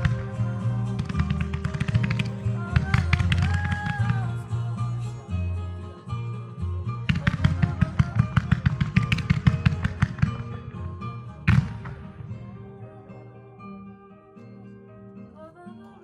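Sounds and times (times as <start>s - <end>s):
fireworks cracking: 0.0s - 4.3s, 7.1s - 10.8s, 11.5s - 12.6s
music playing: 0.0s - 16.0s.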